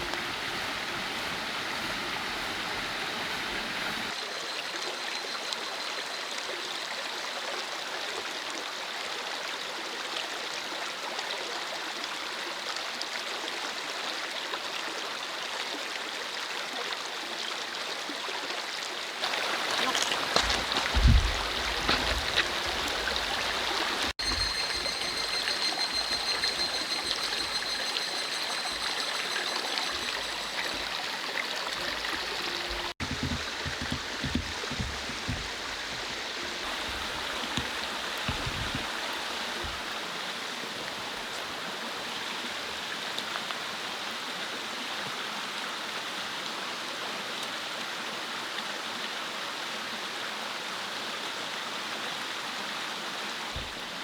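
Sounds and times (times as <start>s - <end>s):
mountain stream rushing: 0.0s - 4.2s, 19.2s - 46.8s
high steady tone: 24.2s - 32.9s
low thumps: 31.8s - 39.0s.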